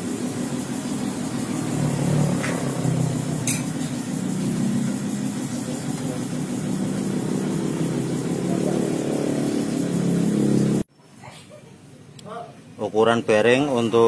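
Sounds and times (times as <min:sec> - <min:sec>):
scooter engine running: 0:00.0 - 0:10.9.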